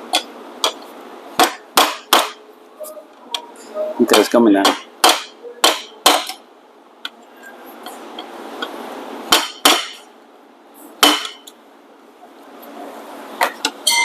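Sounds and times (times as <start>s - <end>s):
hammer striking metal: 1.4s - 2.4s, 4.1s - 6.4s, 9.3s - 10.1s, 11.0s - 11.5s.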